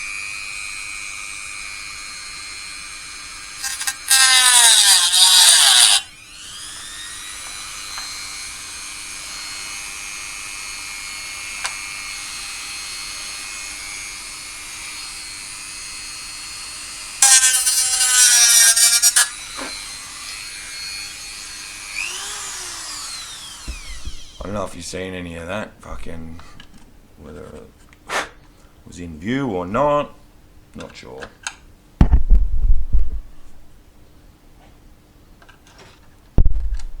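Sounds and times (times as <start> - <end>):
high-speed power tool running: 0.0 - 24.5
power tool biting into material: 0.0 - 24.6.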